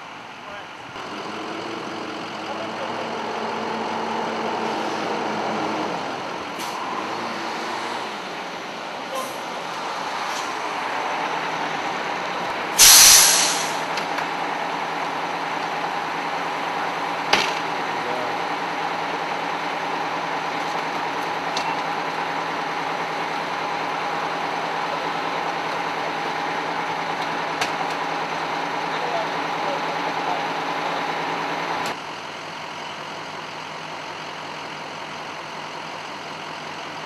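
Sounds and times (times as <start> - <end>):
truck engine idling: 0.0 - 37.0
air brakes hissing: 12.8 - 13.9
short sharp hiss: 12.8 - 13.9.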